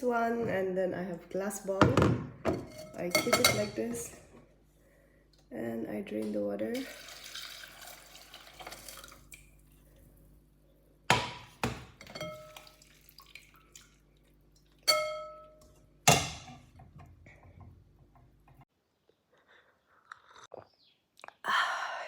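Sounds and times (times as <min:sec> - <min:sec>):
kitchenware clinking on glass bowl: 0:02.5 - 0:04.0, 0:12.0 - 0:12.8, 0:14.8 - 0:16.5
syrup being strained: 0:06.8 - 0:09.4.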